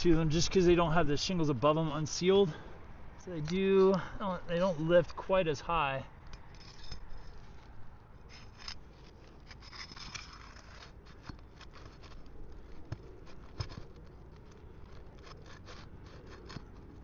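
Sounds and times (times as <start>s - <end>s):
flat bar scraping under shingles: 6.3s - 17.0s.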